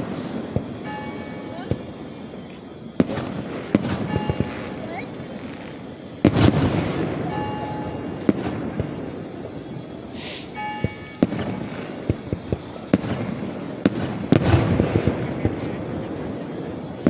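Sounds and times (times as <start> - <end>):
fireworks bangs and crackling pops: 1.6 - 17.0
firework hissing burst: 6.2 - 9.3, 10.1 - 10.6.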